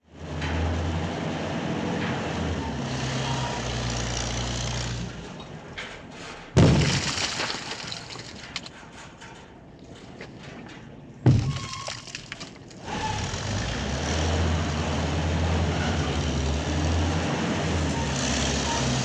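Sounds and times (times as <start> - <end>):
heavy machine engine running: 0.0 - 6.7, 12.8 - 19.0
debris crumbling: 5.8 - 12.9.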